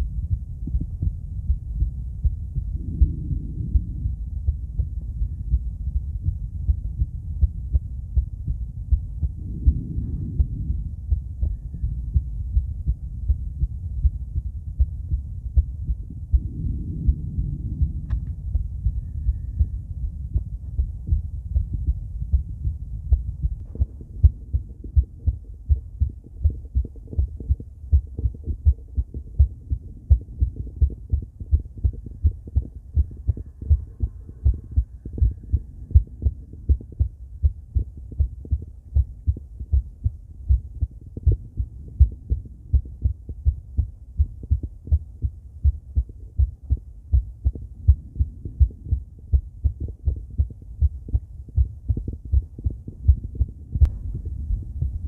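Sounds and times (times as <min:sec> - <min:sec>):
heartbeat through stethoscope: 0:00.0 - 0:55.0.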